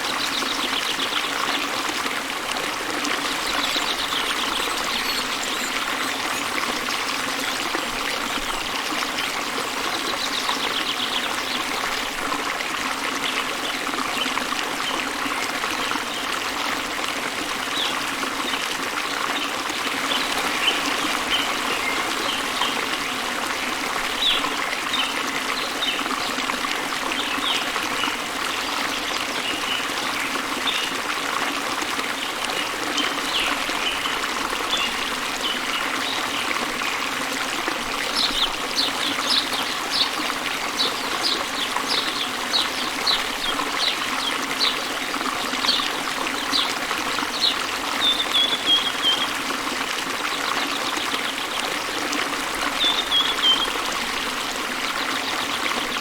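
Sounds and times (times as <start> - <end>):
birds chirping: 3.4 - 6.6
waterfall rushing: 19.8 - 26.6, 32.2 - 49.6.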